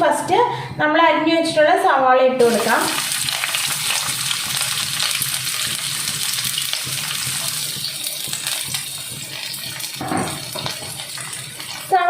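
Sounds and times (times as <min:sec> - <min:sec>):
onions sizzling in oil: 0:02.4 - 0:12.0.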